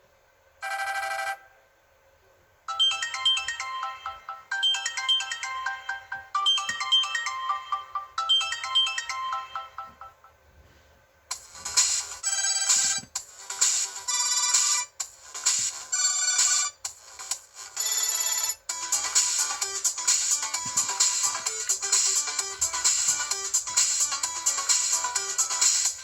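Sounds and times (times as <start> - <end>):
louder phone ringtone: 0.6 - 1.6, 2.7 - 10.4, 11.8 - 13.0
electronic ringtone melody: 2.7 - 10.4, 11.7 - 14.9, 17.8 - 26.0.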